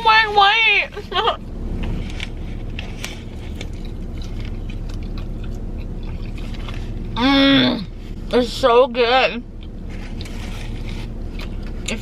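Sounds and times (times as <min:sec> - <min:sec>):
steady low hum: 0:00.0 - 0:12.0
person chewing food: 0:01.7 - 0:08.3, 0:09.5 - 0:11.9.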